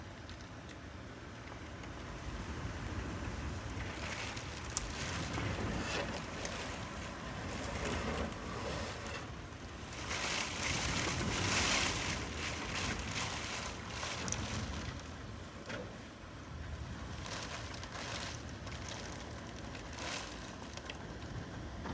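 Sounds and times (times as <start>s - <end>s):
hurricane wind gusting: 2.5s - 15.7s.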